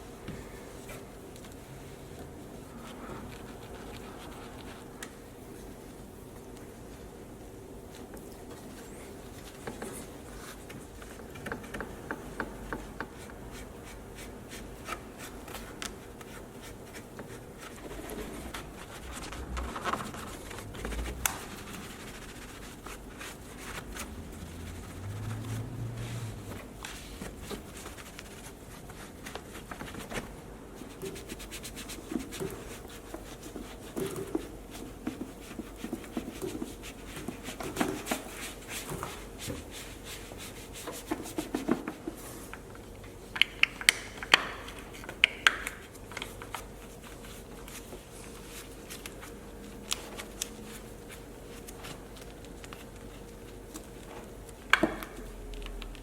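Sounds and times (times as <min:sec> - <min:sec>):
brush rubbing on car surface: 0:12.8 - 0:30.1
scattered clicks and taps: 0:43.0 - 0:46.7.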